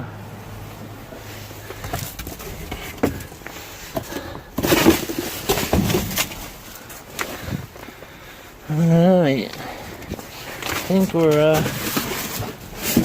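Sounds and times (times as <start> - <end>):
rustling: 1.1 - 13.0
knocks and clicks of items handled: 1.7 - 8.0, 10.0 - 13.0.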